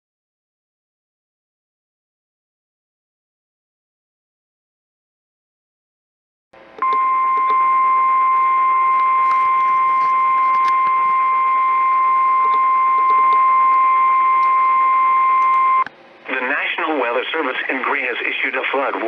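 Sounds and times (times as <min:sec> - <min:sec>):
loud steady high beep: 0:06.8 - 0:15.9
faint crackles: 0:08.8 - 0:11.3.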